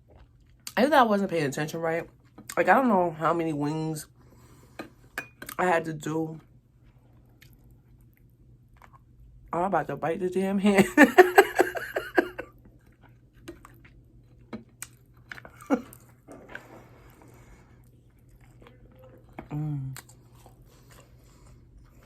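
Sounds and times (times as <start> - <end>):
chewing and biting food: 0.0 - 0.8, 6.4 - 9.4, 12.5 - 22.0.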